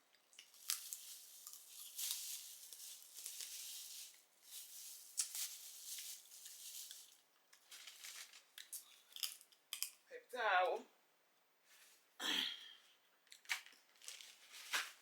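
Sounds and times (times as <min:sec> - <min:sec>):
hands cracking seafood shells: 0:08.5 - 0:10.0.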